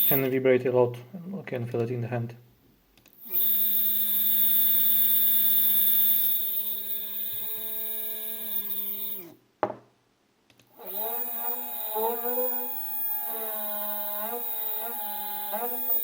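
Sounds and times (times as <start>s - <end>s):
click: 10.5s - 10.7s
stepper motors whining: 10.8s - 16.0s.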